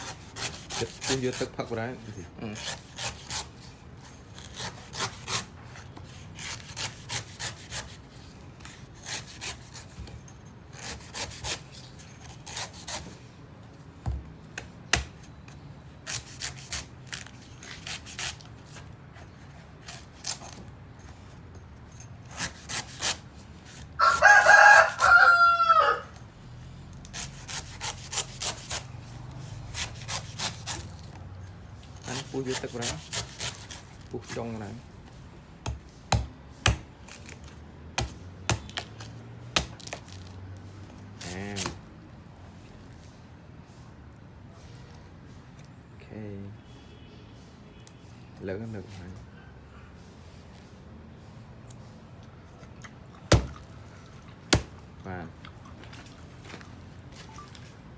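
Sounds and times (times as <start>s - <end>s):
hand file rasping on steel: 0.0s - 3.6s, 4.3s - 9.9s, 10.8s - 11.6s, 12.2s - 13.1s, 22.2s - 23.9s, 27.0s - 31.0s, 32.0s - 34.5s
rooster crowing: 24.0s - 26.2s.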